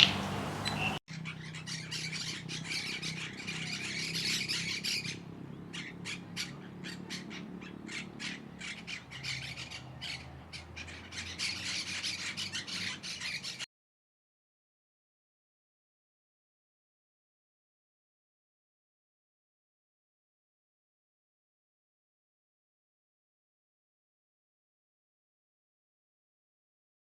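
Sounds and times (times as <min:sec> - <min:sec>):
birds squawking: 0:00.0 - 0:13.7.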